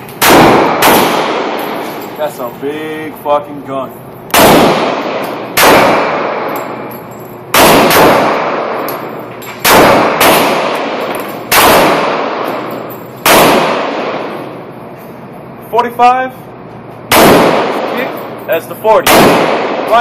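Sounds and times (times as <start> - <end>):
pistol shots with ringing decay: 0.2 - 2.1, 4.3 - 6.9, 7.5 - 14.5, 17.1 - 20.0.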